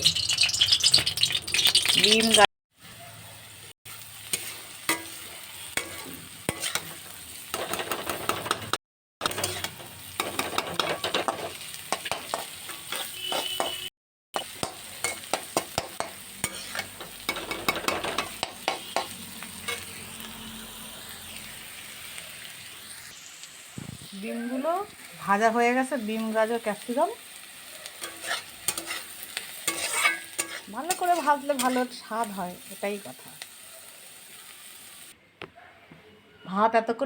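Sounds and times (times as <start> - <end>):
vegetables sizzling in oil: 0.0 - 35.2
spatula scraping and knocking pan: 4.4 - 19.8, 28.0 - 32.0.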